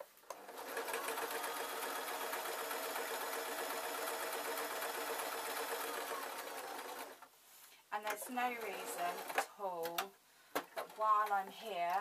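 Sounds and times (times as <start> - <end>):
electric sewing machine running: 0.4 - 7.2.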